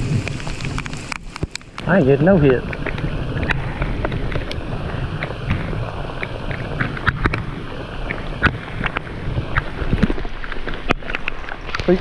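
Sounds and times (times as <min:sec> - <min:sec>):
heavy rain hissing: 0:00.0 - 0:12.0
raindrops tapping close by: 0:00.0 - 0:12.0
wind buffeting microphone: 0:00.0 - 0:12.0.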